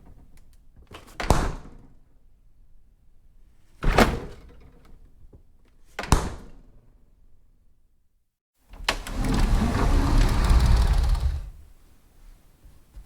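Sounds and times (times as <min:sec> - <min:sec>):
steady rough noise: 0:09.1 - 0:11.6.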